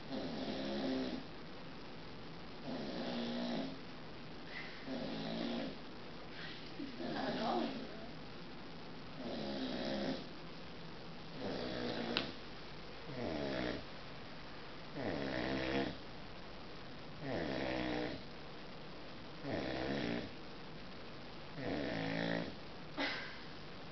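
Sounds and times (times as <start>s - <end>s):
puppy snoring: 0.0s - 1.3s, 2.6s - 3.8s, 4.5s - 5.8s, 7.0s - 8.0s, 9.2s - 10.3s, 11.3s - 12.4s, 13.1s - 13.9s, 14.9s - 16.0s, 17.2s - 18.2s, 19.4s - 20.3s, 21.6s - 22.6s.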